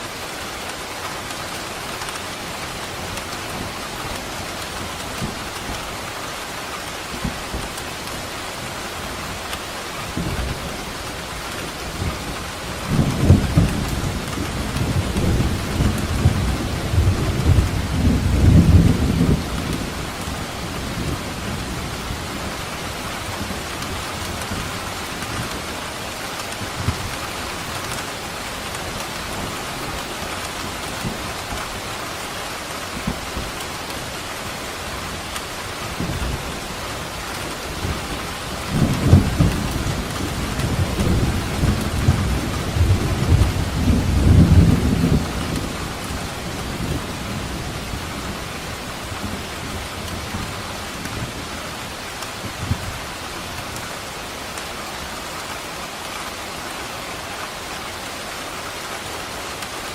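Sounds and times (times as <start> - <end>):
steady rain falling: 0.0 - 59.9
rolling thunder: 11.9 - 22.6, 35.9 - 51.5.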